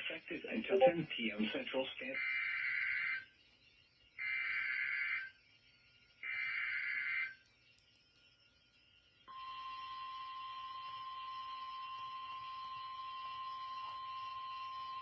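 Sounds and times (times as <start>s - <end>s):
steady warning alarm tone: 2.1s - 3.4s, 4.2s - 5.4s, 6.2s - 7.6s, 9.2s - 15.0s.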